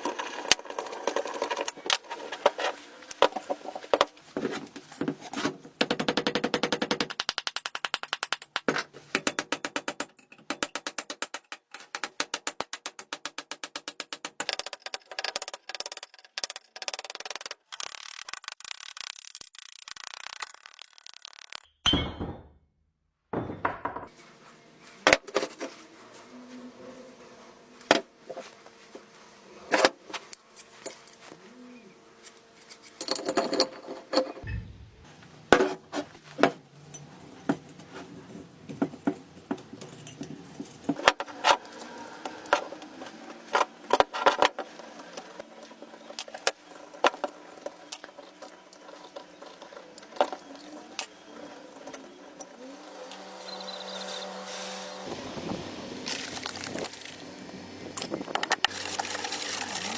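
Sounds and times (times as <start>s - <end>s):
metal parts clinking and rattling: 30.3s - 31.3s, 32.2s - 34.4s, 58.0s - 59.9s.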